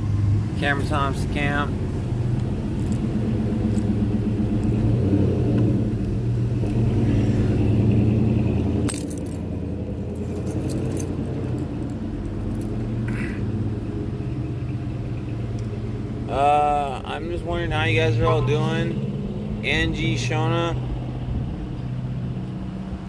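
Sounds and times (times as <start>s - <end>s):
engine humming: 0.0s - 23.0s
light metallic jingles: 8.8s - 13.4s.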